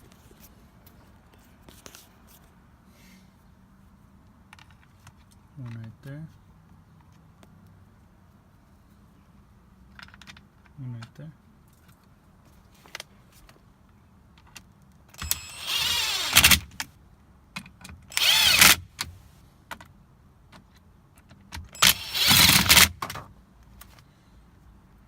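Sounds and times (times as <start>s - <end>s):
power driver whining: 15.2s - 16.7s, 18.1s - 19.0s, 21.8s - 22.9s.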